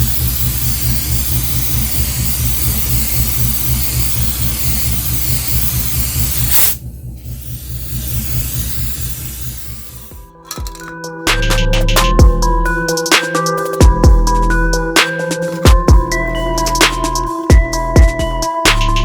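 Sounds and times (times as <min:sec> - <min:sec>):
spray gun hissing: 0:00.0 - 0:10.3
compressor low hum: 0:00.0 - 0:13.0.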